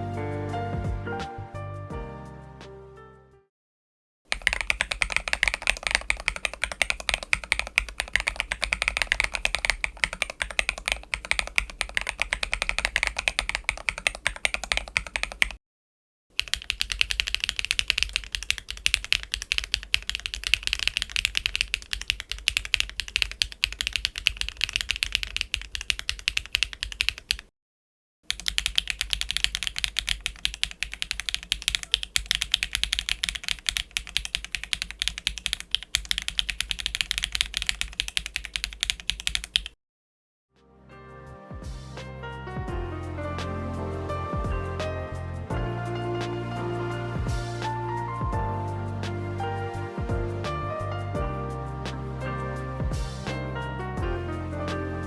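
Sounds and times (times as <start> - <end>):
mechanical keyboard typing: 4.3 - 15.6, 16.4 - 27.5, 28.3 - 39.8.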